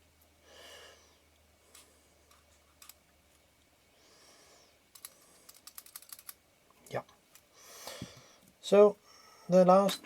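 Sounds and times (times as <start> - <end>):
lens handling clicks: 4.9 - 6.4.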